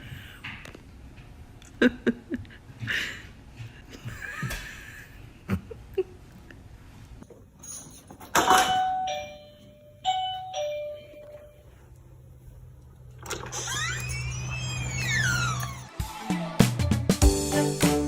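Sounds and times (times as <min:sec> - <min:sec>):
two-note doorbell chime: 0:08.7 - 0:11.6.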